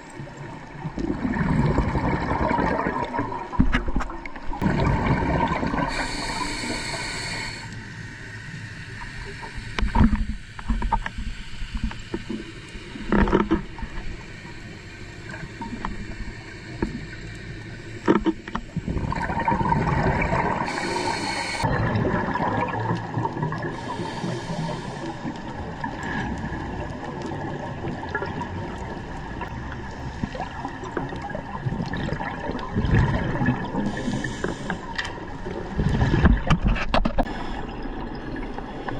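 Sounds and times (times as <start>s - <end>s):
exhaled bubbles rumbling: 0.0s - 6.4s, 18.7s - 38.9s
regulator hiss: 5.8s - 18.1s, 20.4s - 21.7s, 23.7s - 25.6s, 33.9s - 34.9s
diver's regulator breathing: 5.8s - 18.2s, 20.2s - 21.7s, 23.7s - 25.7s, 33.8s - 35.5s.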